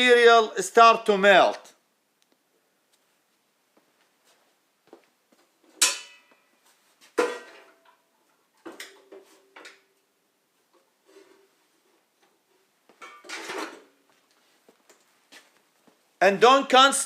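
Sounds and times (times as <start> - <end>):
ringing metallic clanks: 5.8 - 6.5.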